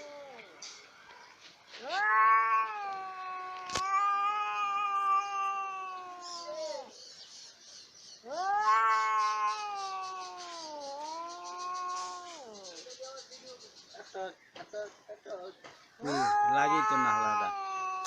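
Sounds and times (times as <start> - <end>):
cat yowling: 1.8 - 6.9, 8.2 - 12.6, 16.0 - 18.0.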